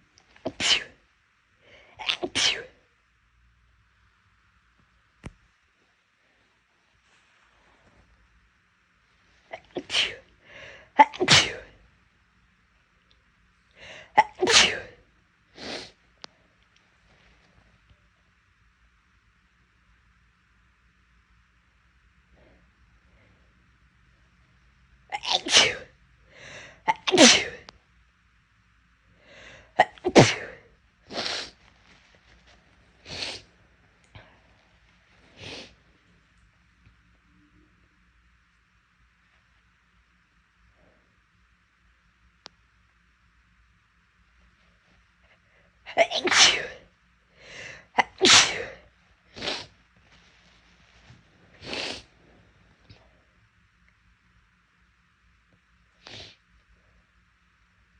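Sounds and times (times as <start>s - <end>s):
person sneezing loudly: 0.5s - 1.0s, 2.0s - 2.8s, 9.5s - 10.3s, 10.9s - 11.8s, 14.0s - 15.0s, 25.1s - 25.9s, 26.8s - 27.7s, 29.8s - 31.6s, 45.9s - 46.9s, 47.6s - 49.7s.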